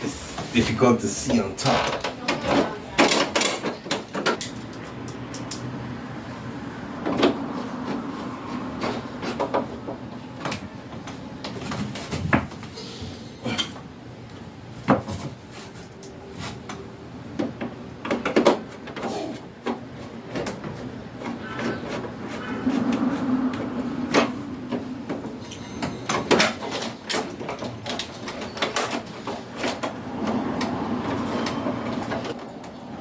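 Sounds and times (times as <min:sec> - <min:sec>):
clicks and knocks of parts handled: 0:01.6 - 0:05.8.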